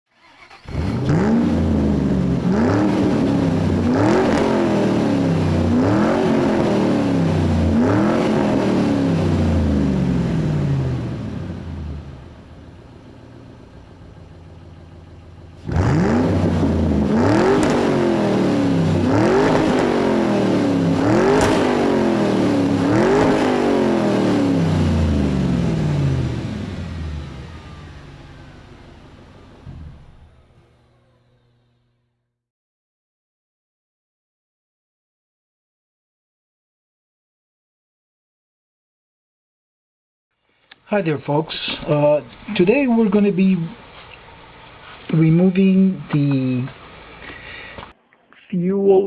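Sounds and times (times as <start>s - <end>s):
car engine revving: 0.1s - 31.6s.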